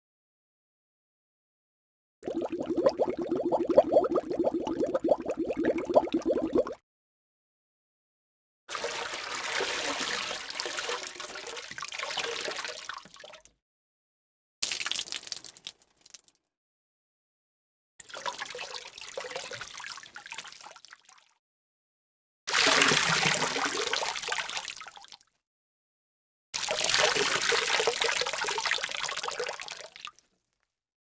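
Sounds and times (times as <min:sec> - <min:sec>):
water pouring: 0:02.2 - 0:06.8, 0:08.7 - 0:13.5, 0:14.6 - 0:16.3, 0:22.5 - 0:24.8, 0:26.6 - 0:30.2.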